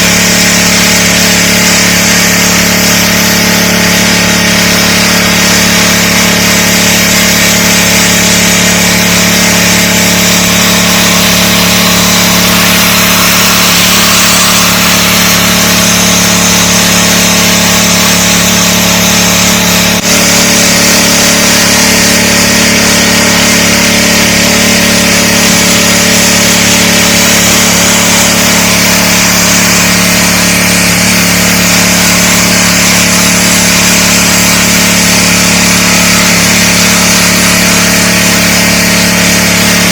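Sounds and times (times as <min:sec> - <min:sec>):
high-pressure spray hissing: 0:00.0 - 0:39.9
pressure washer engine hum: 0:00.0 - 0:39.9.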